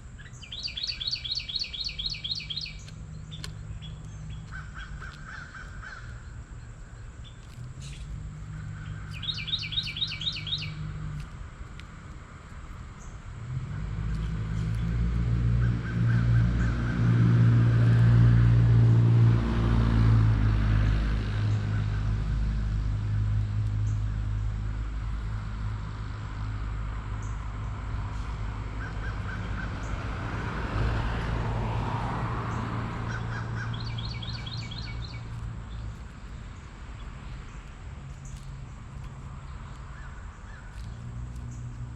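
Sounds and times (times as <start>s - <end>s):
birds chirping: 0.0s - 11.4s, 32.3s - 41.9s.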